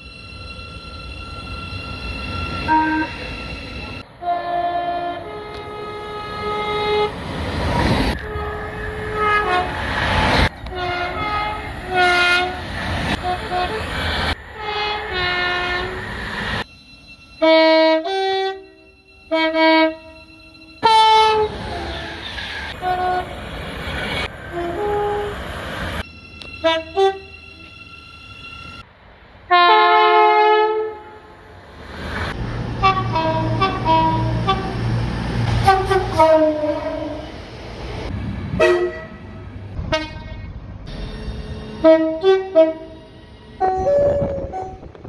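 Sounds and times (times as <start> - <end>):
train horns: 2.6 - 7.2, 8.1 - 10.0, 10.6 - 16.2, 17.4 - 23.4, 24.5 - 25.5, 26.5 - 27.7, 29.5 - 31.3, 32.8 - 37.4, 38.5 - 40.5, 41.5 - 45.0.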